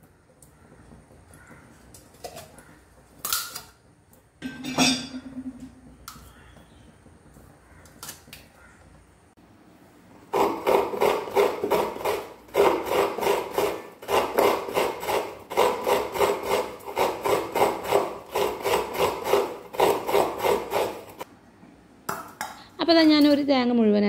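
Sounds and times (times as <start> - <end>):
coconut grater rasping: 10.3 - 21.3.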